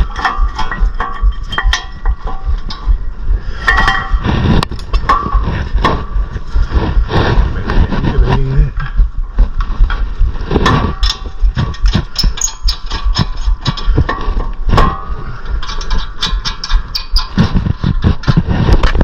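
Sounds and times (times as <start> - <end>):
metallic clicks of hand tools: 0.0 - 2.9, 10.6 - 18.4
low rumble: 0.0 - 19.0.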